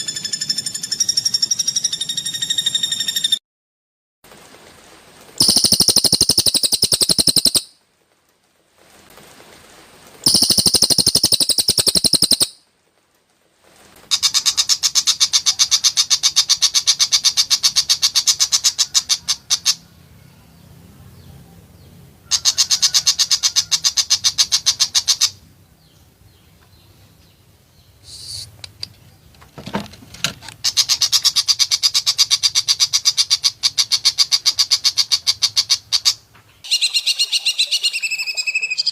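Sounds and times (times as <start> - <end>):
bird singing rapid sharp notes: 5.4 - 7.7, 10.3 - 12.6.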